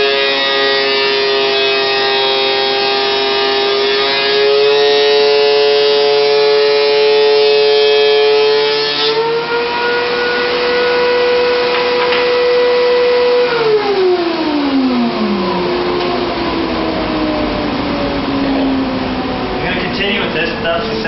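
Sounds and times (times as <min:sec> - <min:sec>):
thickness planer whining: 0:00.0 - 0:21.0.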